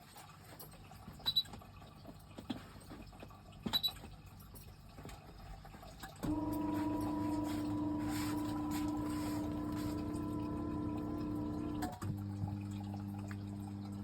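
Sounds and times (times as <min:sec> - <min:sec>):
steady humming tone: 0:06.3 - 0:14.0.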